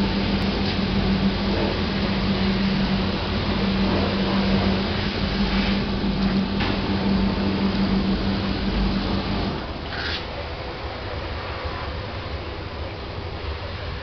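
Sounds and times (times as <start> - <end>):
water spraying inside dishwasher: 0.0 - 10.5
dishwasher pump hum: 0.0 - 14.0.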